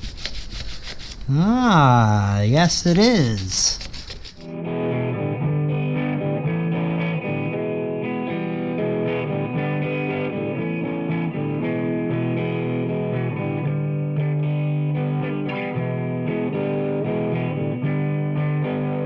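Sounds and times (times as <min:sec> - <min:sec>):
distorted electric guitar: 0:04.5 - 0:19.0.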